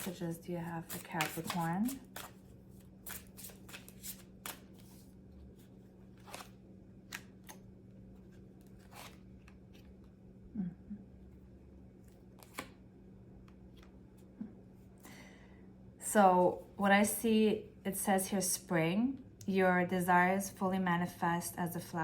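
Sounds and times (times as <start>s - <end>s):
cards being shuffled: 0.0s - 7.6s, 8.2s - 10.1s, 12.1s - 12.8s
faint low hum: 0.0s - 21.9s.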